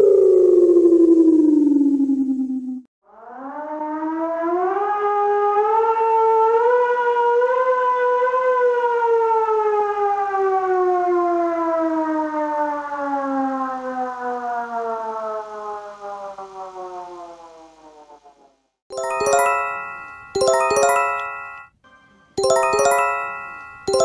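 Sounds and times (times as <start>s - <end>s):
civil defense siren wailing: 3.1s - 18.1s.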